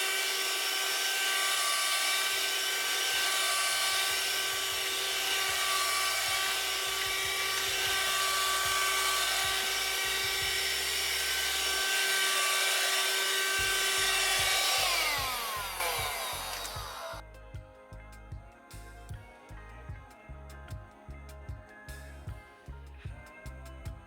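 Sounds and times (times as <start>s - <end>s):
hand-held vacuum cleaner running: 0.0s - 17.2s.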